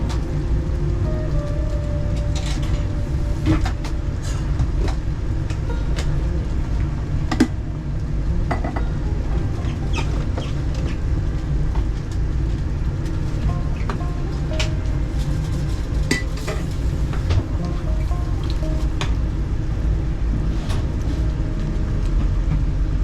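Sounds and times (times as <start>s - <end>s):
steady low rumble: 0.0s - 23.0s
utensils and dishes clinking: 13.2s - 19.0s.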